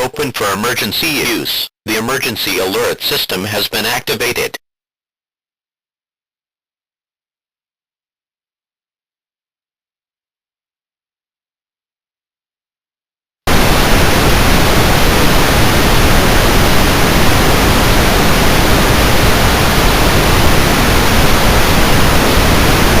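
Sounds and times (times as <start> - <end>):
television static hiss: 13.5 - 23.0.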